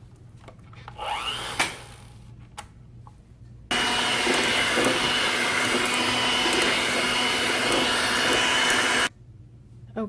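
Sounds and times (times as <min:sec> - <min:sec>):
electric mixer whining: 0:01.0 - 0:02.1, 0:03.7 - 0:09.1.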